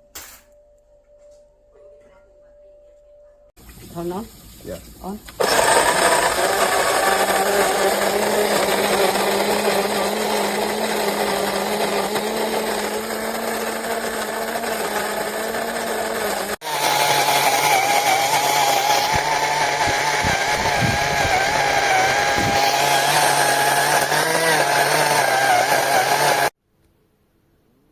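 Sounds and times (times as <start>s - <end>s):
electric coffee grinder motor: 5.4s - 26.6s.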